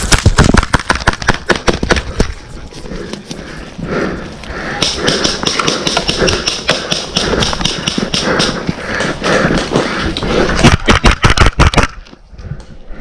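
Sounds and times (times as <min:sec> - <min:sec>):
airsoft guns firing: 0:00.0 - 0:02.1, 0:04.8 - 0:10.0, 0:10.8 - 0:12.0
quick footfalls: 0:00.0 - 0:11.8.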